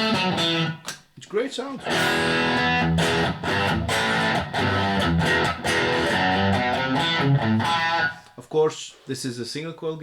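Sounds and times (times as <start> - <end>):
electric guitar chords strummed: 0.0 - 0.9, 1.8 - 8.2.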